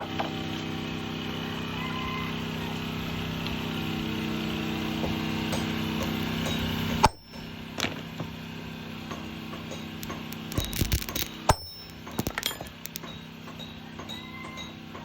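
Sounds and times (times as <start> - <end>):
electric motor humming: 2.6 - 13.3.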